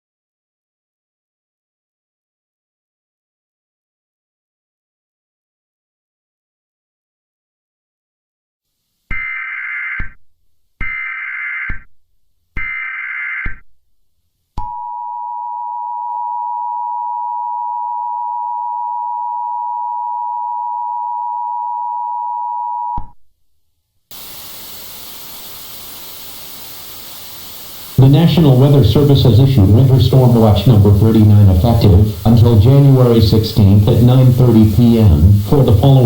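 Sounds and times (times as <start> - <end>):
screeching data bursts: 9.1 - 10.2
steady hiss: 24.1 - 36.0.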